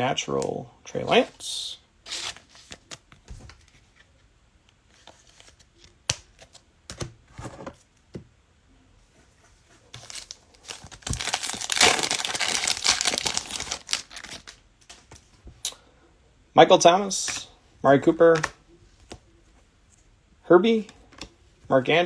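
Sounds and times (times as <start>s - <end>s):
wrapper crinkling and tearing: 10.0s - 14.6s.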